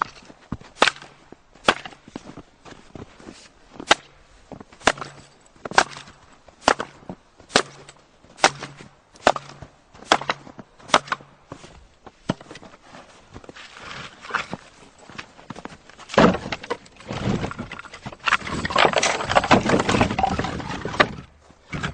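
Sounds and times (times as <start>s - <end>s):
axe chopping firewood: 0.0s - 2.2s, 3.8s - 4.2s, 4.8s - 11.4s, 12.3s - 12.7s, 16.0s - 21.9s.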